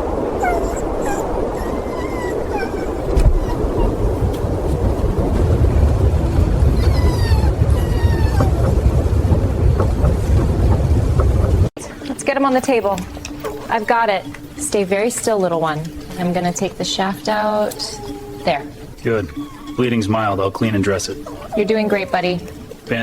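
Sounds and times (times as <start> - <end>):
low rumbling noise: 0.0 - 12.0
small animal whimpering: 0.4 - 4.2, 6.7 - 8.6, 17.4 - 20.1, 21.2 - 22.6.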